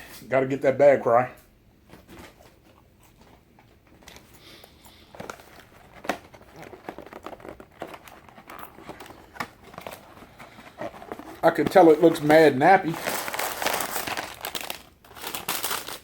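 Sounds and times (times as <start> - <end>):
paper packaging crinkling: 4.0 - 16.0.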